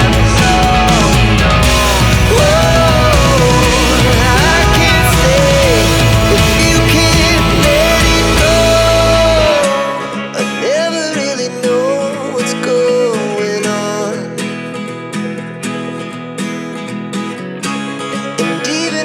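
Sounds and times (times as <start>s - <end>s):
deep bass: 0.0s - 9.6s
song with strummed acoustic guitar: 0.0s - 19.0s.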